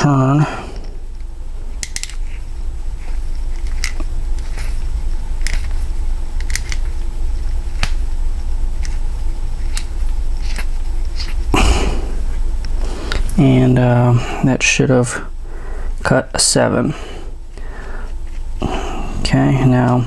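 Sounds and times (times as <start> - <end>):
steady low rumble: 0.0 - 20.0.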